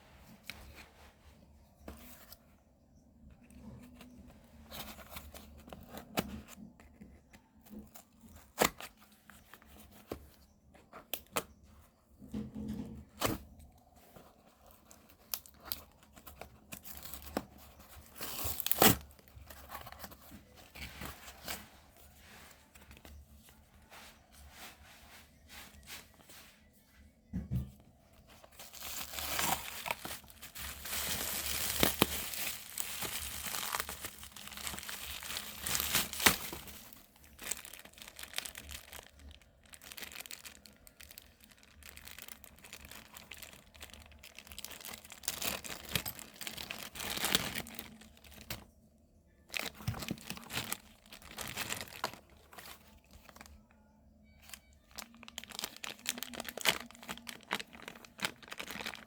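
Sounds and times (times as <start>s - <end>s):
packaging crinkling and tearing: 3.2s - 10.4s, 13.0s - 23.6s, 28.2s - 48.8s, 49.4s - 53.7s, 54.3s - 59.0s.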